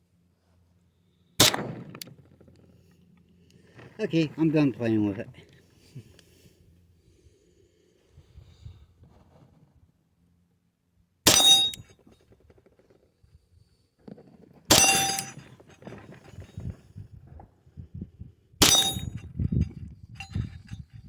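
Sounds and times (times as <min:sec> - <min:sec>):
gunshots with metallic ring: 0:01.4 - 0:02.0, 0:11.3 - 0:11.8, 0:14.7 - 0:15.5, 0:18.6 - 0:19.2.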